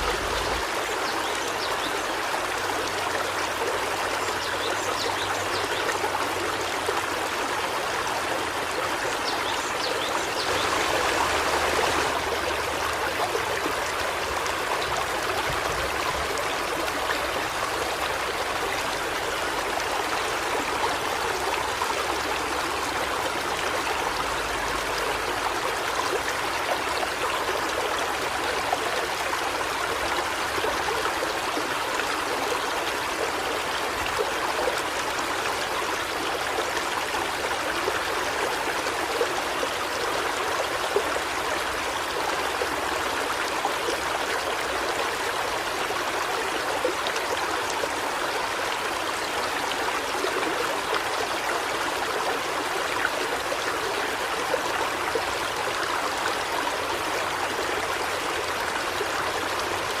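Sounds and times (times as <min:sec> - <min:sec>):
river flowing over rocks: 0:00.0 - 1:00.0.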